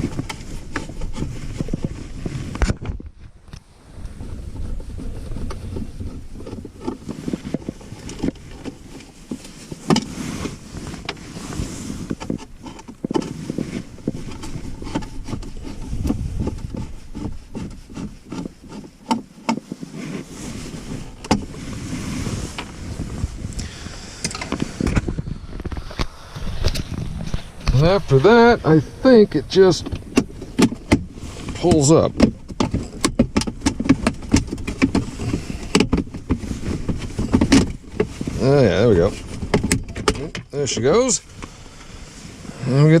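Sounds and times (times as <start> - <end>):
plastic parts clicking and rattling: 29.1 - 40.6.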